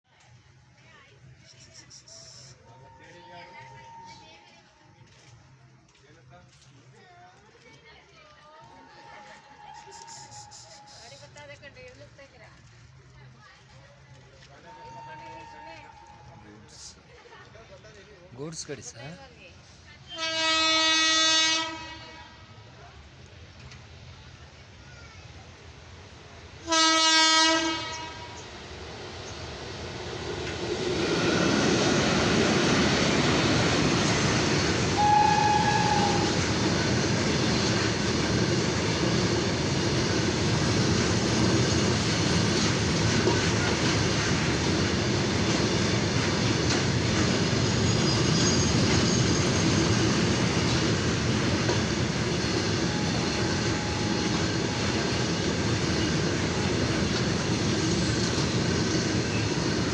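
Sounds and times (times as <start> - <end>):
train horn blast: 14.7 - 16.4, 20.1 - 22.6, 26.6 - 28.5, 34.8 - 36.7, 52.8 - 55.1.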